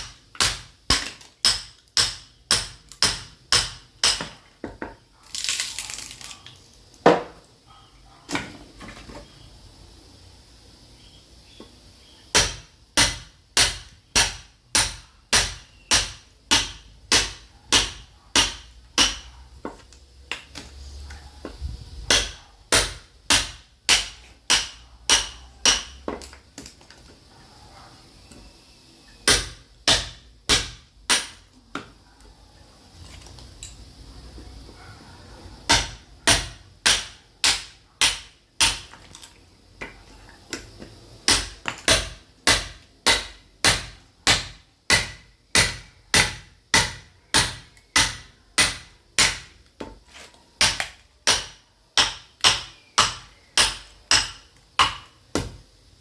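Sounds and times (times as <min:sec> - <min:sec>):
sledgehammer striking steel chisel: 0:00.0 - 0:04.4, 0:12.4 - 0:19.3, 0:22.1 - 0:26.0, 0:29.3 - 0:31.4, 0:35.7 - 0:39.0, 0:41.3 - 0:49.5, 0:50.6 - 0:55.6.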